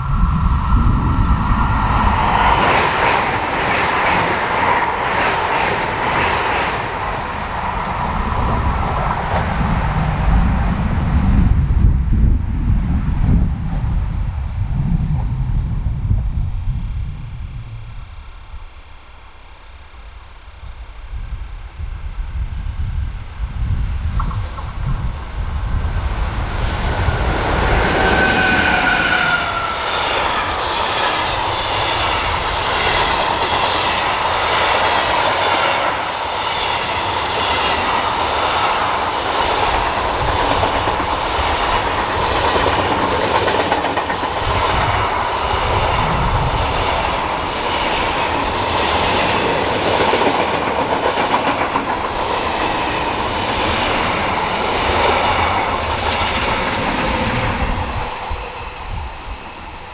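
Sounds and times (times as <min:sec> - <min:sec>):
falling whine: 0:23.8 - 0:49.8
train wheels clacking: 0:24.0 - 0:59.9.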